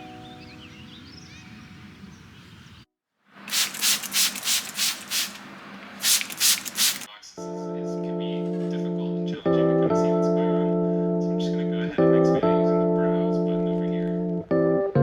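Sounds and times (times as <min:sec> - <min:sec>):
rhythmic rubbing strokes: 0:03.5 - 0:07.1.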